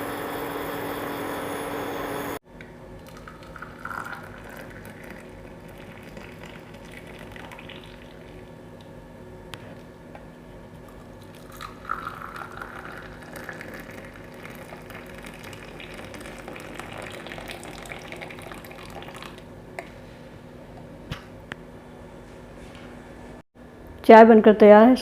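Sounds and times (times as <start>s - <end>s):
tea pouring into a cup: 3.0s - 8.5s, 10.8s - 19.4s.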